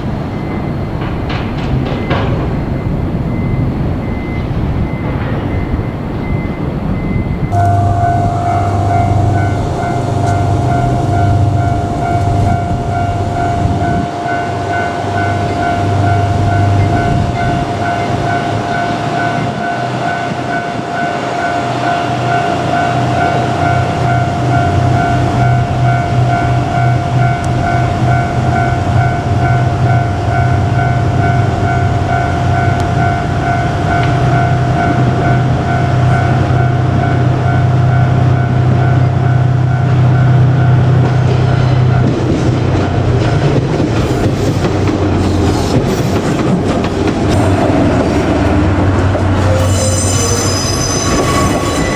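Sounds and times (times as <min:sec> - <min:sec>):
diesel locomotive engine droning: 0:00.0 - 0:51.9
constant high tone: 0:02.8 - 0:44.3, 0:46.4 - 0:51.9.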